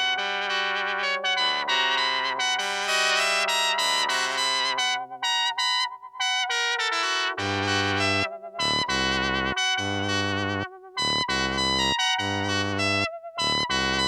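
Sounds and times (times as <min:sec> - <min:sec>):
electronic keyboard brass chords: 0:07.3 - 0:14.0.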